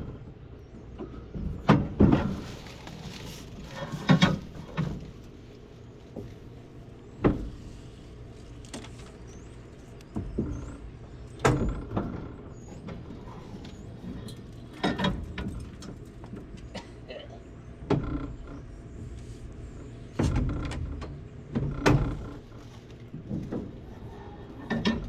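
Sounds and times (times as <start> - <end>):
low machine hum: 0.0 - 25.0
sharp knocks and clunks: 1.0 - 2.5, 7.2 - 7.6, 20.1 - 22.4.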